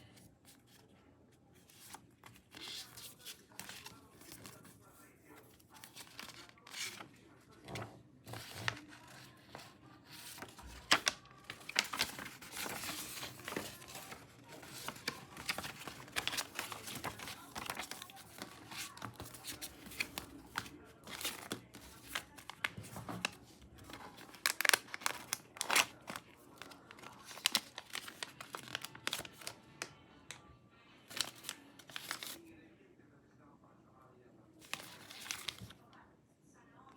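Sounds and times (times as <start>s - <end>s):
packaging tearing and crinkling: 10.3s - 22.7s, 23.9s - 29.5s.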